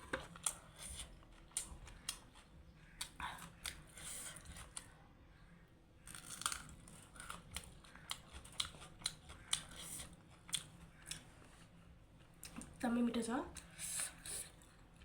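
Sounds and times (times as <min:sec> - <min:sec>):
person chewing with mouth smacks: 0:06.4 - 0:11.8.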